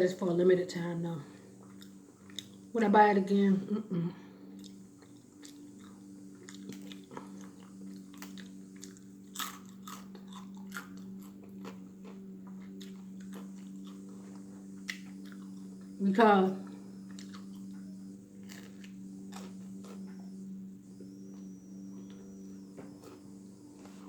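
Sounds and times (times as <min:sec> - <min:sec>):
steady low hum: 0:00.0 - 0:24.0
chewing and biting sandwich: 0:04.6 - 0:16.0, 0:17.0 - 0:20.4
crisp crunches: 0:18.4 - 0:20.1.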